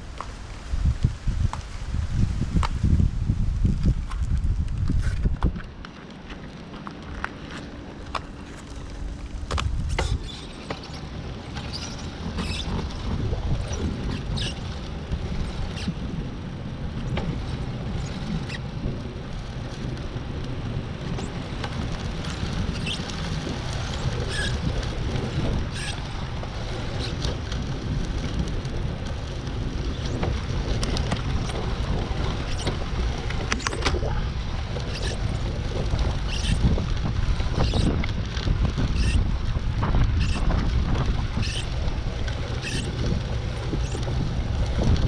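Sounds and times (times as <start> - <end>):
wind rumbling on microphone: 0.0 - 45.0.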